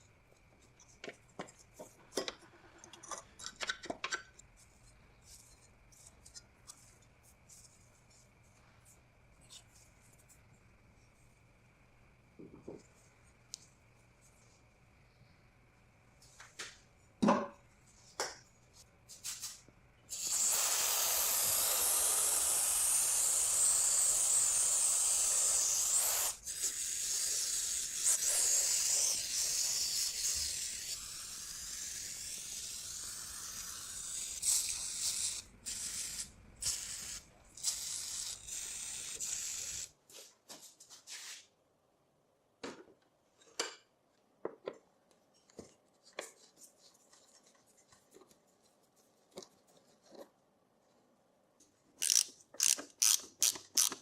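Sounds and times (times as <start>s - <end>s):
aerosol can spraying: 20.1s - 39.9s.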